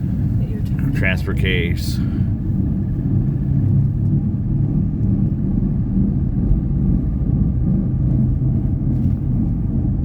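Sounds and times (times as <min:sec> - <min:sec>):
car low rumbling grind: 0:00.0 - 0:10.0.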